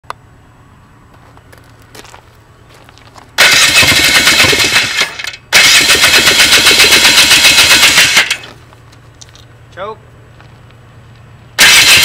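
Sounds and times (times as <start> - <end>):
atv engine firing unevenly: 3.4 - 8.6, 11.6 - 12.0.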